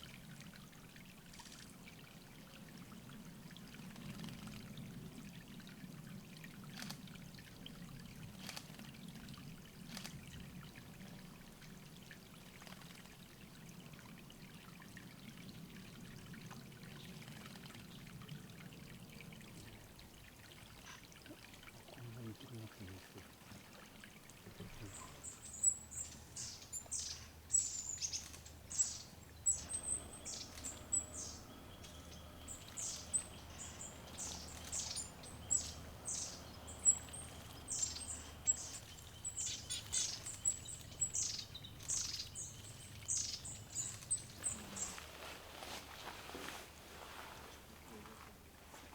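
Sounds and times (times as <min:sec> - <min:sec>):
water trickling: 0:00.0 - 0:48.9
songbird high-pitched calls: 0:24.7 - 0:45.0.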